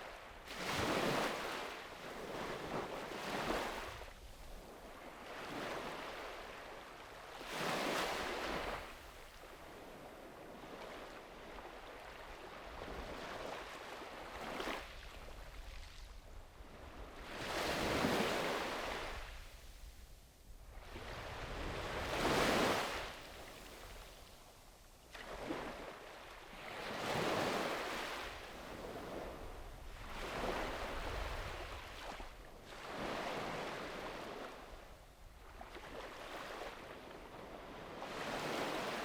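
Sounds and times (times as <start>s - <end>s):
wind rumble on microphone: 14.3s - 24.6s, 26.5s - 39.0s
sea waves breaking on beach: 21.0s - 23.8s, 30.0s - 34.6s, 35.7s - 39.0s.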